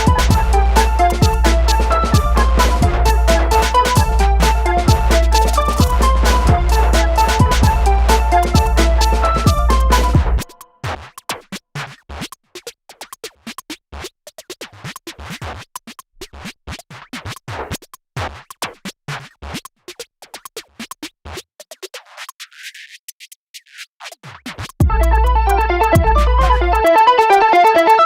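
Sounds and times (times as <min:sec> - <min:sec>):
bass-heavy music: 0:00.0 - 0:10.5, 0:24.8 - 0:28.0.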